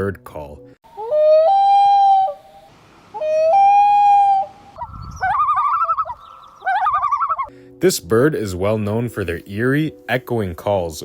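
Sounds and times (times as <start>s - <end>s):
loon tremolo call: 0.9s - 7.5s
loon wailing: 0.9s - 7.5s.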